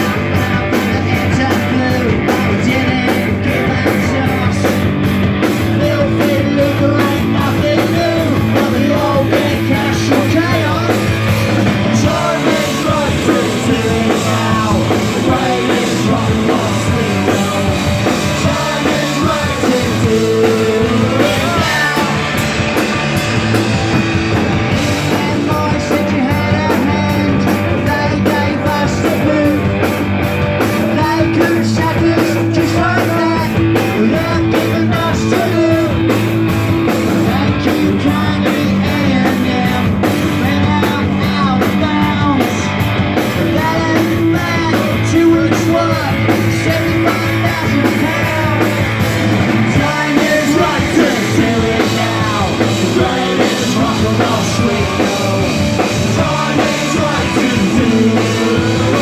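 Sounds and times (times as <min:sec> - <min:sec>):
person singing lead vocal: 0:00.0 - 0:59.0
punk rock band playing live: 0:00.0 - 0:59.0.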